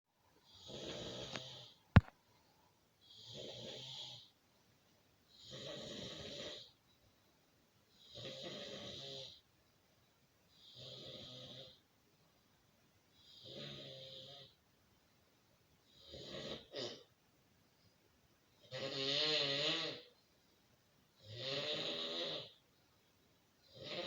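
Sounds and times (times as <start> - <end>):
man snoring: 0.5 - 1.8, 3.1 - 4.3, 5.4 - 6.7, 8.0 - 9.4, 10.6 - 11.8, 13.3 - 14.5, 16.0 - 17.0, 18.7 - 20.1, 21.2 - 22.6, 23.7 - 24.0.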